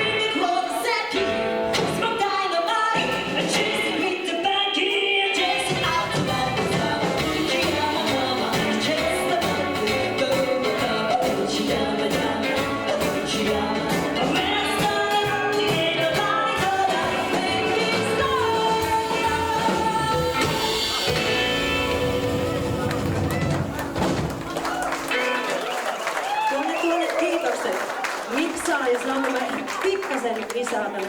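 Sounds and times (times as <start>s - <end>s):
person singing: 0.0s - 23.1s
live rockabilly band: 0.0s - 31.0s.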